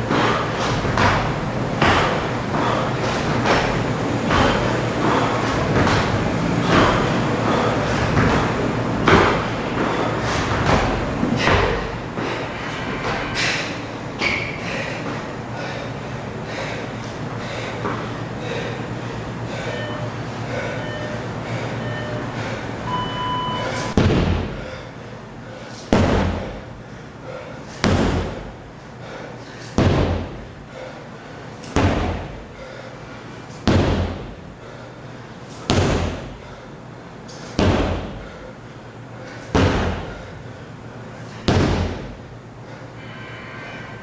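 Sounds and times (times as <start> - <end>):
sledgehammer strikes: 23.8 - 24.6, 29.8 - 30.4, 41.4 - 42.1.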